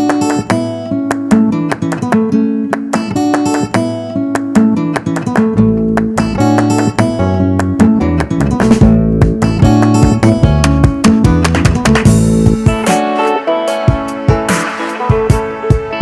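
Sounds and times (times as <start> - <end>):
acoustic guitar picking: 0.0 - 16.0
bass line: 5.6 - 13.0.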